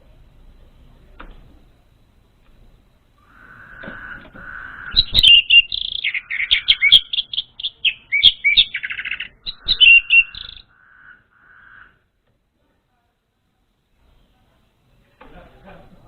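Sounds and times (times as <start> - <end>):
faint buzzy hum: 0.0 - 16.0.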